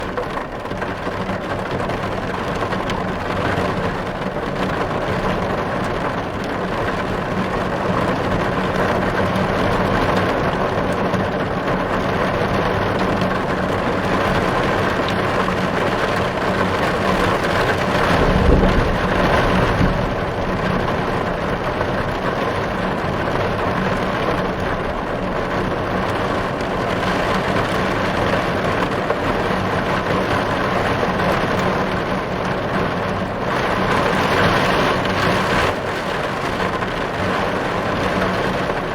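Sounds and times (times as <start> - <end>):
heavy rain on a car: 0.0 - 38.9
low rumble: 17.8 - 22.8.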